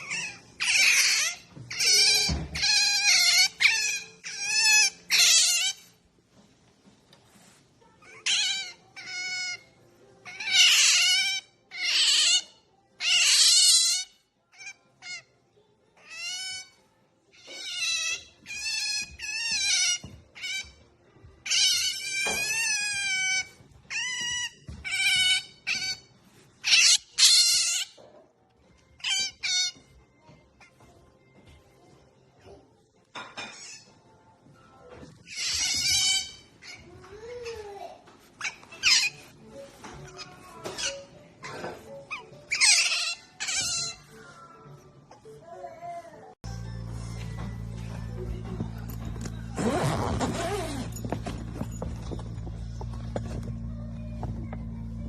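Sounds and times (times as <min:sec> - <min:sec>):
otter squealing: 0:49.2 - 0:52.2.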